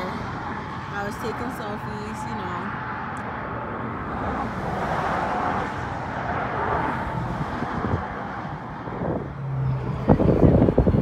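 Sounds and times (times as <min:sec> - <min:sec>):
car passing by: 0:02.5 - 0:11.0.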